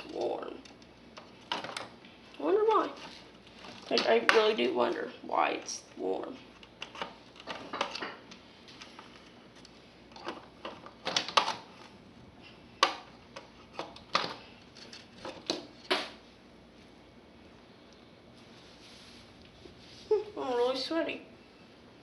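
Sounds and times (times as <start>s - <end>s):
plastic and metal parts clattering: 0.0s - 2.0s, 6.6s - 9.3s, 10.1s - 11.8s, 12.8s - 15.9s.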